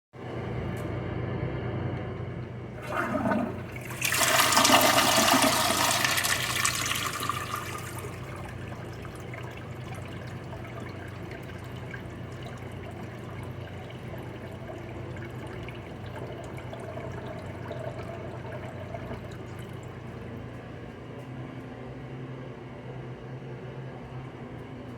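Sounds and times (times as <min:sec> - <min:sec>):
toilet flushing: 0:02.6 - 0:20.5.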